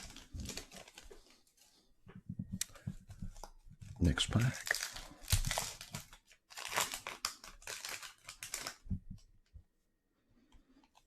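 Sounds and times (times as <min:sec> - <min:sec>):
foil wrapper tearing and crinkling: 0:00.0 - 0:01.4, 0:04.0 - 0:08.9.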